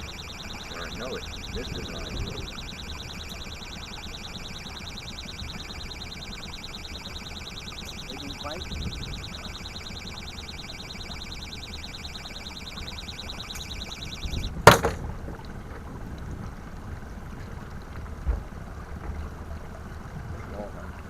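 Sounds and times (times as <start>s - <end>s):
wind on microphone: 0.0s - 3.4s, 7.8s - 10.2s, 13.5s - 21.0s
pulsing high whirr: 0.0s - 14.6s
dull thump: 14.6s - 15.1s
sharp knock: 14.7s - 15.0s.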